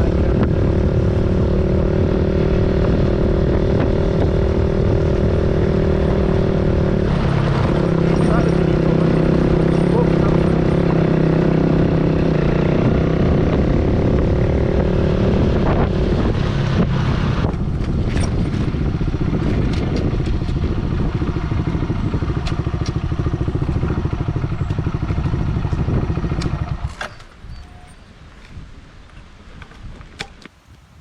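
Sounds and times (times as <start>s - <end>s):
motorcycle engine idling: 19.0s - 26.9s.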